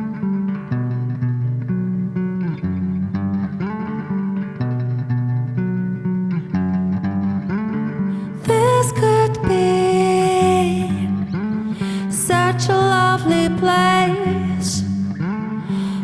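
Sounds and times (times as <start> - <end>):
guitar: 0.0 - 16.0.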